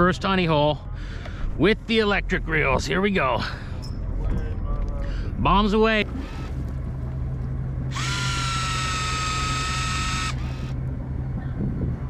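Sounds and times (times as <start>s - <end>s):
steady low hum: 0.0s - 12.0s
electric fishing reel whine: 7.9s - 10.8s.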